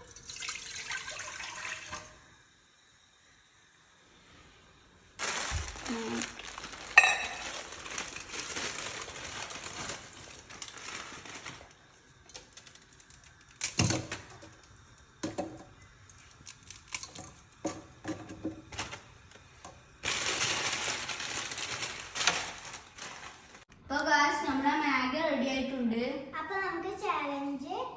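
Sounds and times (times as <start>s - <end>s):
steady hiss: 1.7s - 23.7s.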